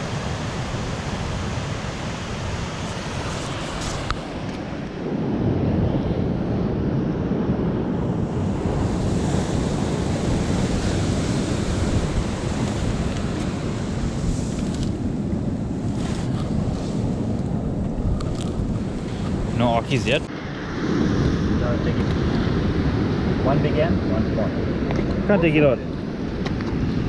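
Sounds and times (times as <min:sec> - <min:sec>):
ocean surf breaking: 0:00.0 - 0:27.0
wind buffeting microphone: 0:00.0 - 0:27.0.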